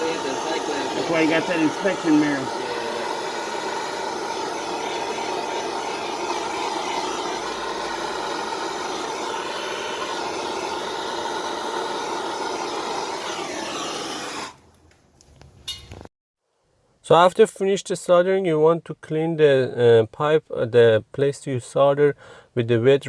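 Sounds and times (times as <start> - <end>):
gas torch flame hissing: 0.0 - 14.6.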